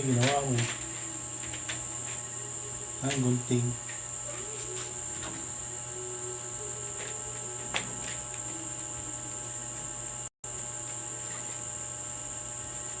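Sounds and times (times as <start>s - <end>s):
high-pitched whine: 0.0s - 13.0s.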